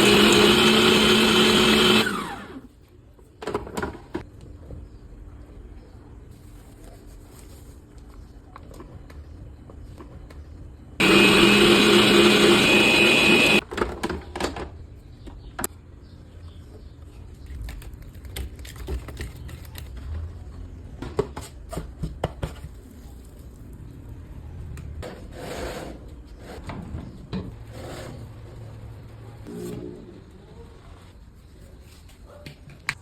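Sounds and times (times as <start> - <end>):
kitchen appliance motor running: 0.0 - 2.6, 11.0 - 13.6.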